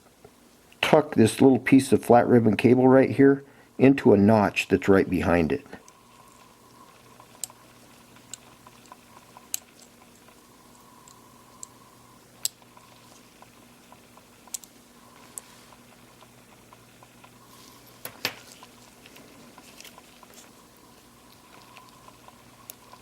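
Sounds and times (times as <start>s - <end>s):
faint steady hum: 0.0s - 23.0s
sharp clicks: 12.4s - 15.4s.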